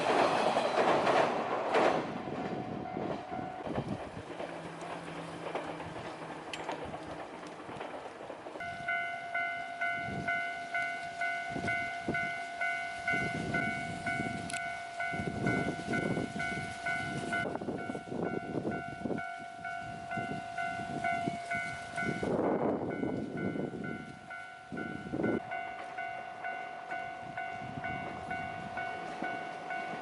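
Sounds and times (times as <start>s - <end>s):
train wheels clattering on rails: 0.0s - 30.0s
level-crossing alarm bell: 8.6s - 30.0s.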